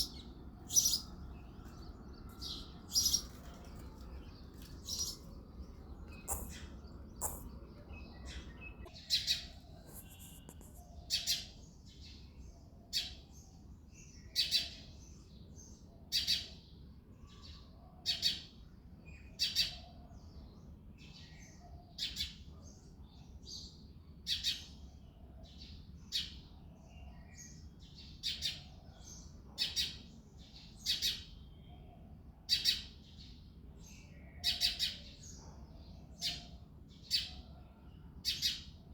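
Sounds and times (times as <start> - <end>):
sparrow chirping: 0.0 - 12.2, 32.5 - 37.6, 38.2 - 38.9.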